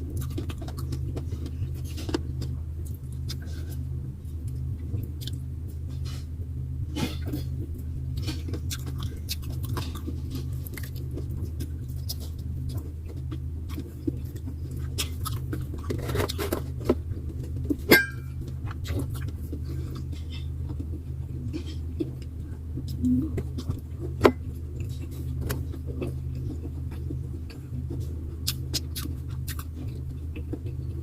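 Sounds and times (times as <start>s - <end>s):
chewing with small crackles: 0.0s - 6.3s, 6.9s - 31.0s
steady low hum: 0.0s - 31.0s
sharp ringing clink: 17.9s - 18.3s.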